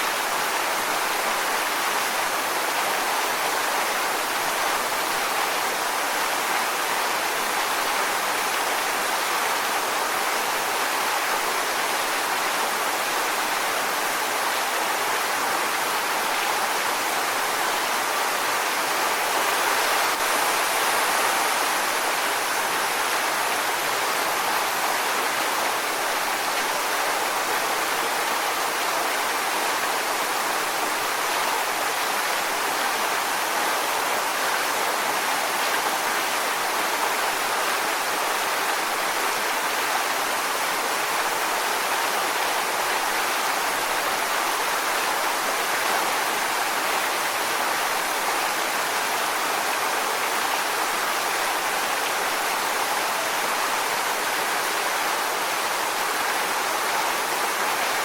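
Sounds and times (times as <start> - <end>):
waterfall onto rocks: 0.0 - 58.0.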